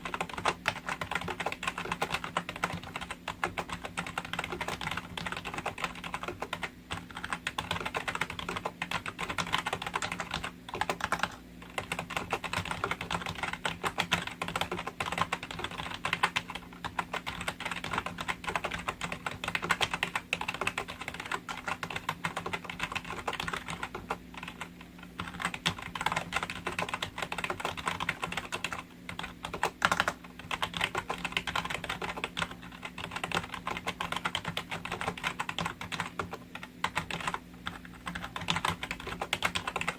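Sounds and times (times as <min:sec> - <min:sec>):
fast typing on keyboard: 0:00.0 - 0:39.9
low steady hum: 0:00.0 - 0:39.9.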